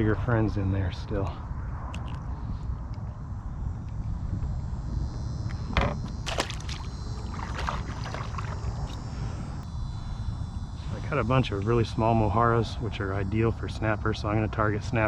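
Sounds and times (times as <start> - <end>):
wind buffeting microphone: 0.0 - 15.0
water sloshing against hull: 5.7 - 9.3
short splashes or knocks: 6.0 - 9.0.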